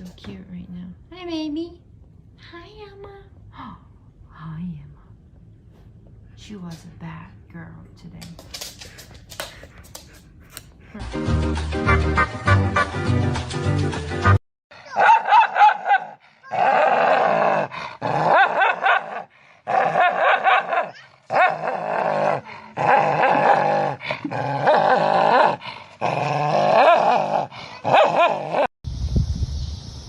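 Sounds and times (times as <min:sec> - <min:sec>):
dog whining and growling: 0:15.9 - 0:28.7.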